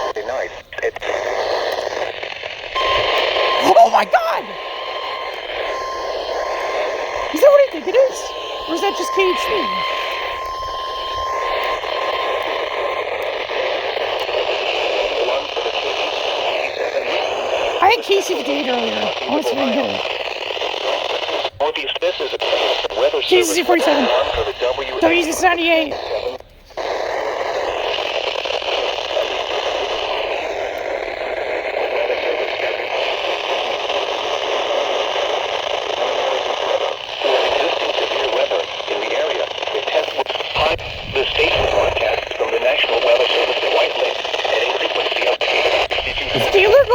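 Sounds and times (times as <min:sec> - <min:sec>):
faint steady alarm tone: 0:00.0 - 0:21.3, 0:22.9 - 0:38.9
radio hiss and static: 0:00.0 - 0:46.9.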